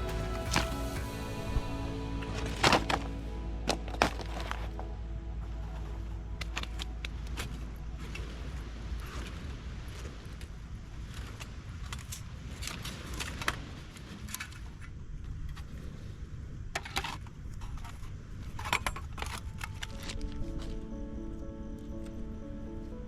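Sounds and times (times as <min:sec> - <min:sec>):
music: 0:00.0 - 0:08.7, 0:19.2 - 0:23.0
steady low rumble: 0:00.0 - 0:23.0.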